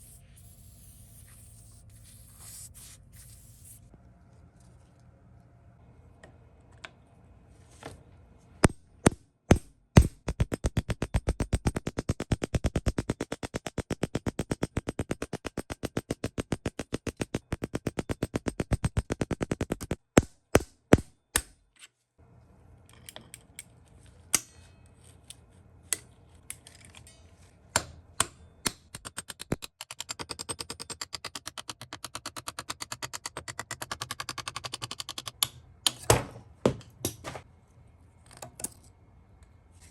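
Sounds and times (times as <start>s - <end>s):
rapid clicking of tool: 10.0s - 21.5s, 28.2s - 35.5s.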